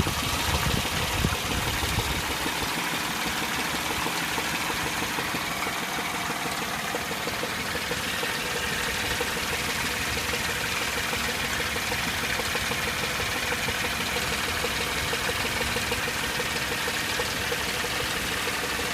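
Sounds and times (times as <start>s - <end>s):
car engine idling: 0.0s - 18.9s
hollow engine knocking: 0.0s - 18.9s.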